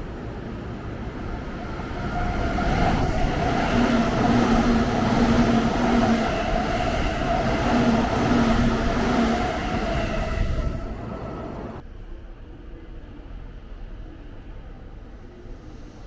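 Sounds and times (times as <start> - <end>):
train rumbling: 0.0 - 12.0.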